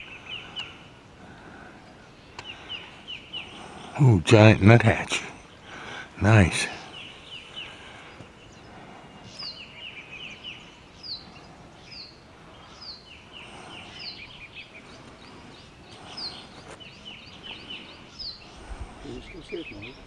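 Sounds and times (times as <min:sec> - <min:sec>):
birds calling high downslurred notes: 0:00.0 - 0:20.0.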